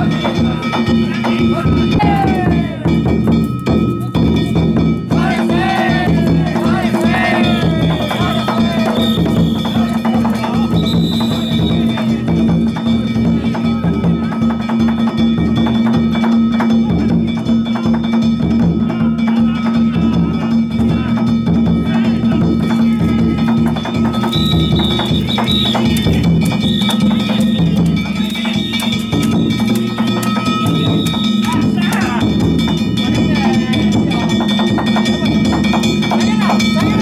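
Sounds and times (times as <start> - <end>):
taiko drums: 0.0 - 37.0
hand-struck gongs ringing: 22.6 - 37.0.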